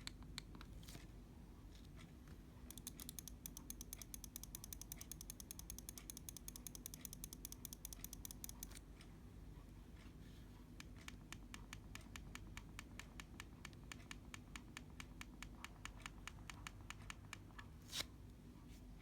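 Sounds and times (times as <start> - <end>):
computer mouse clicks: 2.7 - 8.9, 10.8 - 17.7.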